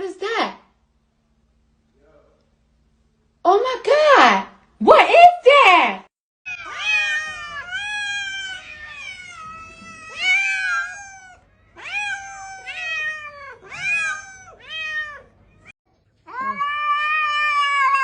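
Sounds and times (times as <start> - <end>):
cat meowing: 6.5 - 15.7, 16.3 - 18.0.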